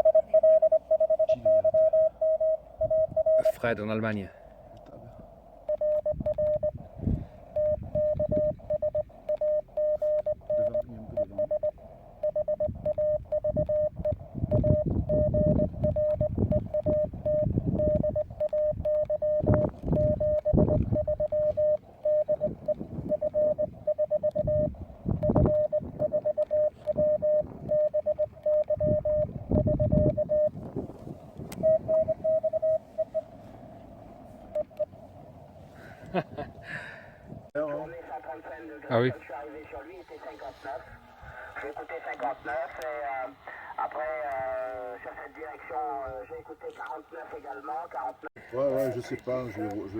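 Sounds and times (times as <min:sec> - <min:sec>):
higher morse beeps: 0:00.0 - 0:04.0, 0:05.7 - 0:06.8, 0:07.5 - 0:30.6, 0:31.6 - 0:33.4
morse code beeping: 0:00.0 - 0:04.1, 0:05.5 - 0:30.8, 0:31.5 - 0:33.4.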